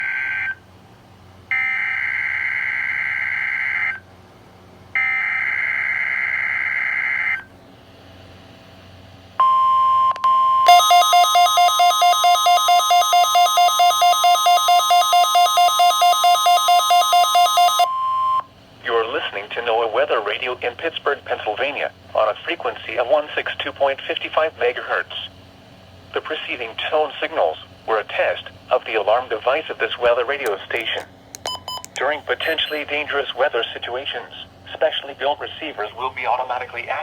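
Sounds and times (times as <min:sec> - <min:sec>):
steady alarm tone: 0:09.4 - 0:18.5, 0:31.5 - 0:33.1.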